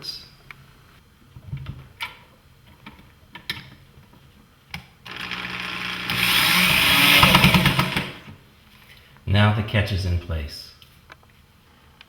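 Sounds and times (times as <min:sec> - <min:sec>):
cordless drill driving screw into wood: 0:05.1 - 0:08.4.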